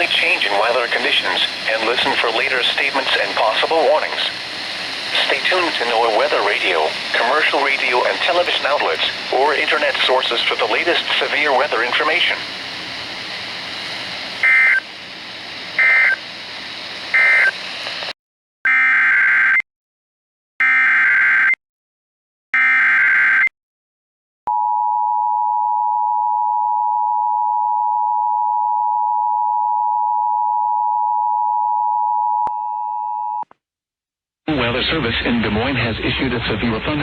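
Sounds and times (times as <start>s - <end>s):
radio hiss: 0.0s - 18.2s
screeching data bursts: 14.4s - 15.0s, 15.7s - 16.3s, 17.1s - 17.6s.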